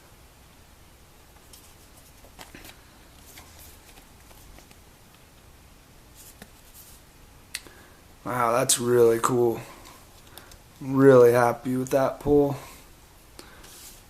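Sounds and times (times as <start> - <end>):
trading cards being shuffled: 1.4 - 4.8, 6.1 - 7.0.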